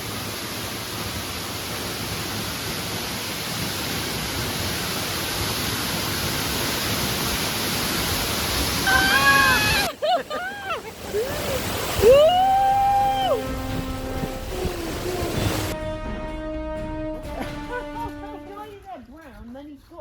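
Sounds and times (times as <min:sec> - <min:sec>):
waterfall roaring: 0:00.0 - 0:15.8.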